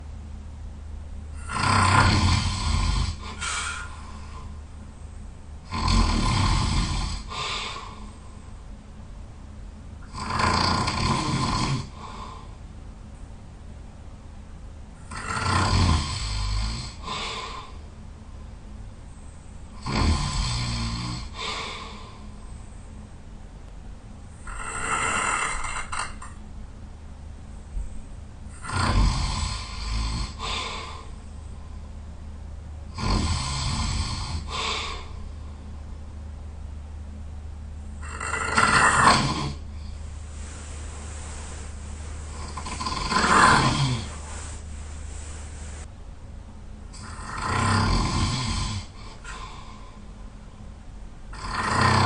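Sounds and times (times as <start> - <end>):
person snoring loudly: 1.4 - 3.8, 5.7 - 7.5, 10.0 - 12.0, 15.1 - 17.2, 19.8 - 21.6, 24.4 - 26.3, 28.5 - 30.9, 32.9 - 35.0, 38.0 - 45.8, 47.0 - 49.4, 51.3 - 52.0
breathy exhale: 3.1 - 4.6, 30.4 - 31.2, 34.4 - 35.3, 39.7 - 45.9.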